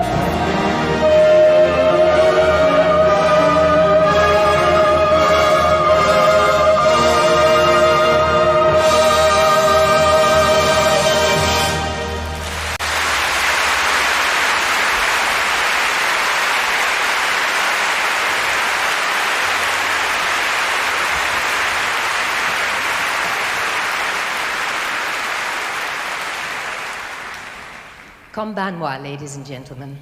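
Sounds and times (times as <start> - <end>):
audience applauding: 11.2 - 28.4.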